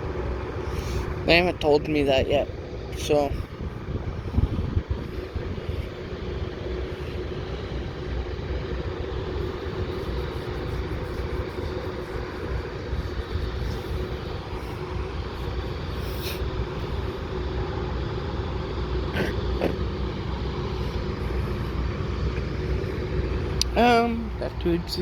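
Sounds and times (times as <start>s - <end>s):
diesel engine rumble: 0.0s - 25.0s
steady hum: 0.0s - 25.0s.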